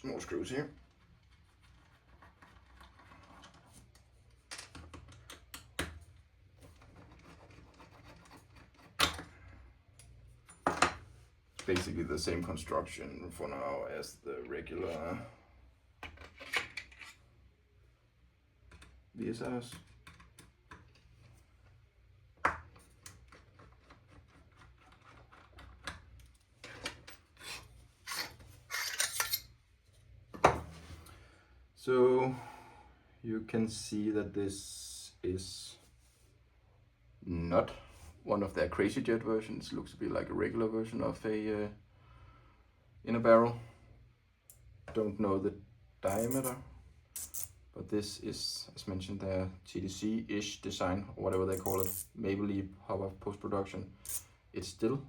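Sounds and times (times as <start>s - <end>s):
faint scraping and rubbing: 46.0s - 46.6s.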